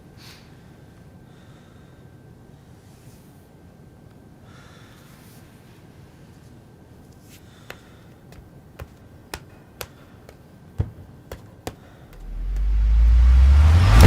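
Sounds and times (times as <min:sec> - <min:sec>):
deep rumble: 0:12.2 - 0:14.0.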